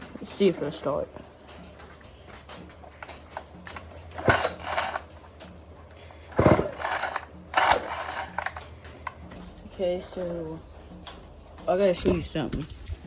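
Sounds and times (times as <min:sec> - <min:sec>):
chainsaw starter cord pulled: 0:04.1 - 0:05.1, 0:06.3 - 0:09.2.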